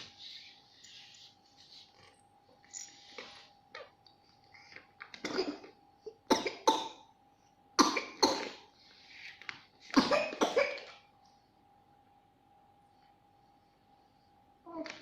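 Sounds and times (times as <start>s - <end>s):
young child coughing: 5.2s - 7.0s, 7.8s - 8.7s, 9.9s - 11.0s.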